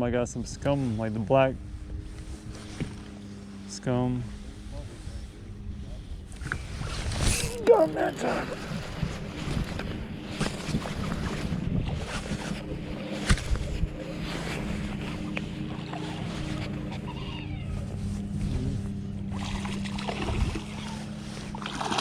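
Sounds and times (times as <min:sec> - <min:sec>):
boat motor humming: 0:00.0 - 0:22.0
water noise: 0:06.3 - 0:17.2, 0:17.8 - 0:22.0.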